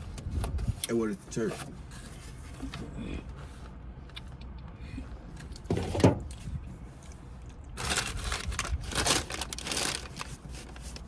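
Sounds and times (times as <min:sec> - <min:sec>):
food packaging crinkling: 0:07.7 - 0:11.0.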